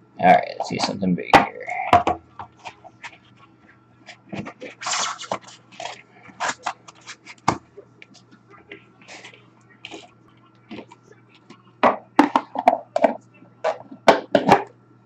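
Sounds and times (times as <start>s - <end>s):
cards and packaging rustling: 2.4s - 11.6s.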